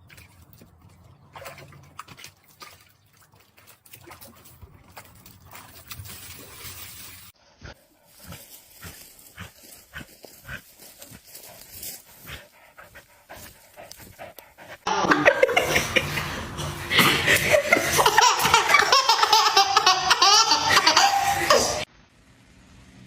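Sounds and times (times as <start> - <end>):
people laughing hard: 14.9 - 21.9.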